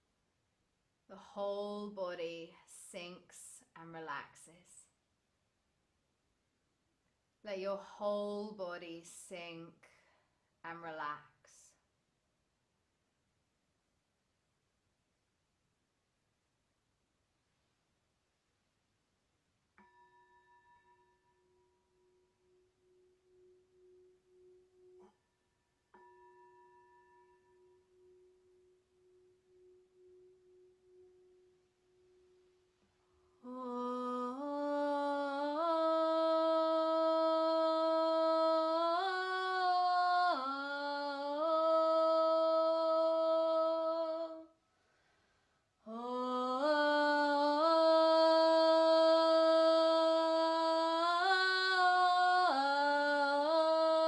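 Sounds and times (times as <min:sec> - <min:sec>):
woman singing wordless notes: 0:01.1 - 0:04.6, 0:07.5 - 0:09.7, 0:33.4 - 0:44.5, 0:45.8 - 0:54.0.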